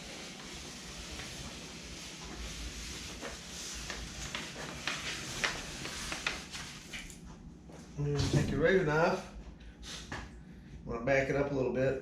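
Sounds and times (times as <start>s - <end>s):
paper rustling and crinkling: 0.3s - 7.2s
paper crackling: 2.7s - 7.1s.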